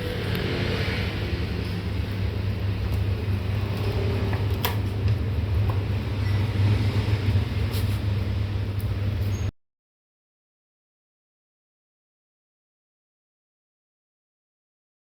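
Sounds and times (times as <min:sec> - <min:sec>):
low mechanical hum with hiss: 0:00.0 - 0:09.5.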